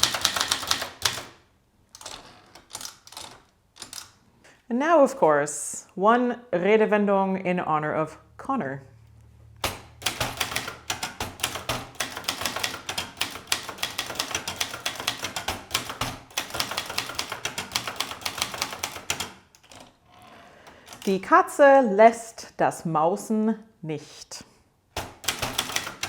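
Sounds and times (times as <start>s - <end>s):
typewriter key strikes: 0.0s - 1.4s, 2.0s - 4.2s, 9.6s - 19.9s, 20.7s - 21.2s, 25.0s - 26.0s.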